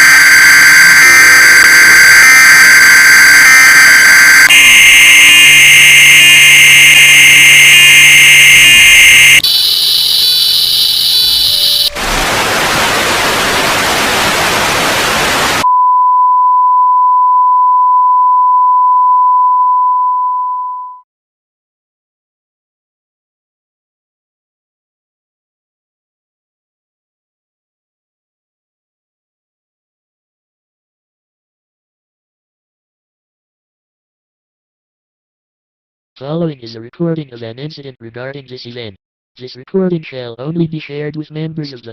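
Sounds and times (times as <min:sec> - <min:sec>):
steady beep: 0:00.0 - 0:12.0
harsh electronic alarm tones: 0:00.0 - 0:15.6
loud static: 0:00.0 - 0:15.6.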